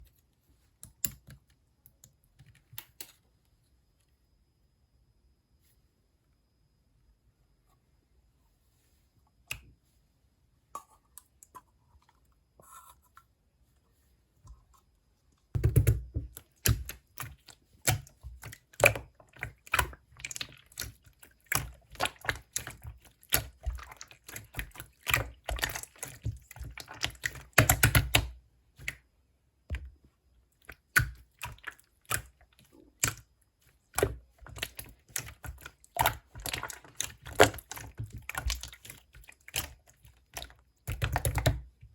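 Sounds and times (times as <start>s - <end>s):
slime squished by hand: 30.7s - 41.7s.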